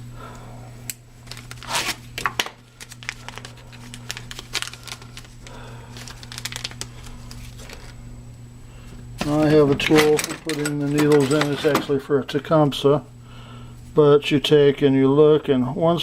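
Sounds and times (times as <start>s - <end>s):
plastic packaging crinkling and tearing: 1.2s - 8.0s.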